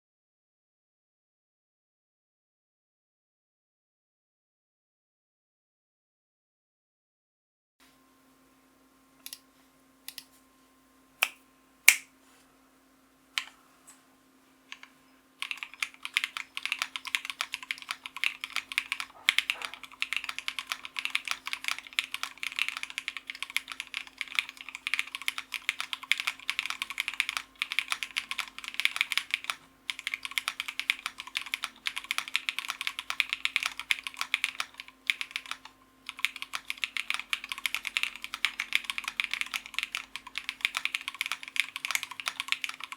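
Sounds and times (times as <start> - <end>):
typing on mechanical keyboard: 14.7 - 42.9.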